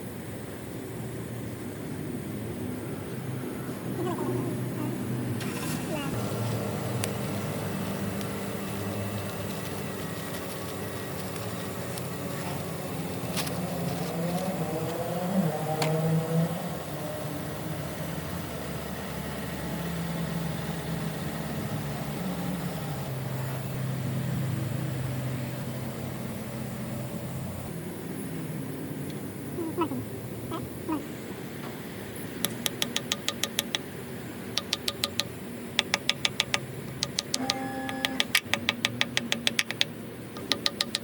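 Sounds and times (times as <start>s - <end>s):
vehicle engine running: 0.0s - 41.0s
sharp clicks: 6.9s - 15.1s, 32.3s - 41.0s.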